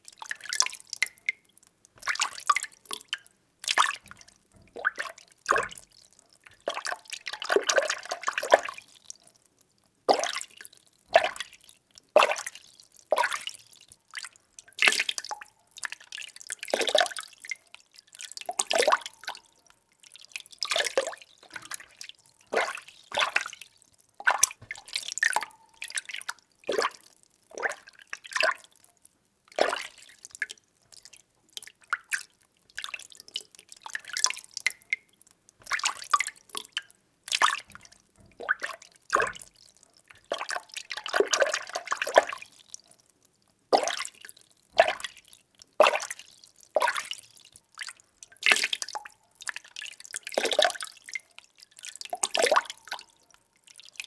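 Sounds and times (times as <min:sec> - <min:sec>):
water sloshing and splashing: 0:02.0 - 0:02.6, 0:20.6 - 0:28.6, 0:35.6 - 0:42.6.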